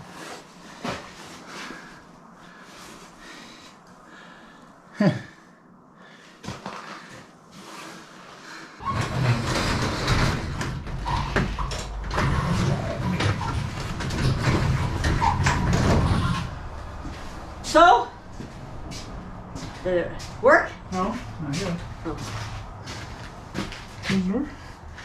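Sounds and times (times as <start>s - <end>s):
machine rumbling with rattles: 8.8s - 25.0s.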